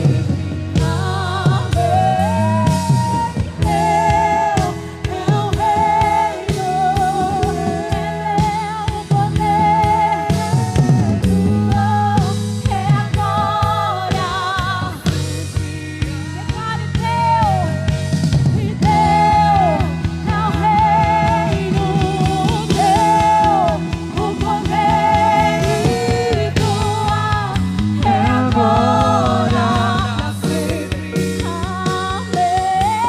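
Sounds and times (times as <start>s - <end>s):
drum beat: 0.0s - 13.3s, 17.6s - 33.0s
bass line: 0.0s - 33.0s.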